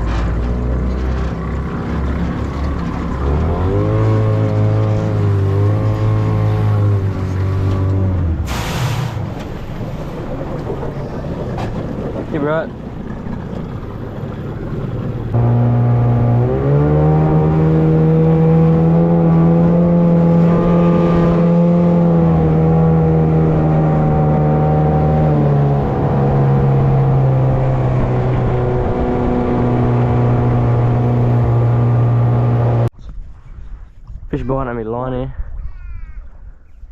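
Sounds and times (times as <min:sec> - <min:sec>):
outboard motor running: 0:00.2 - 0:08.3, 0:10.0 - 0:32.9.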